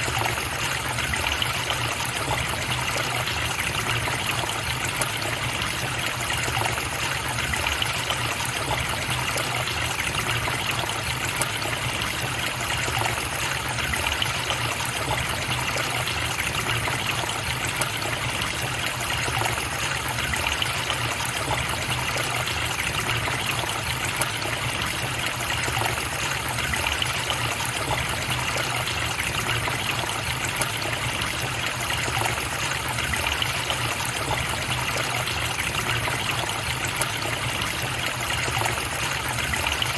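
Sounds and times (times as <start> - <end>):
stream flowing and splashing: 0.0 - 39.9.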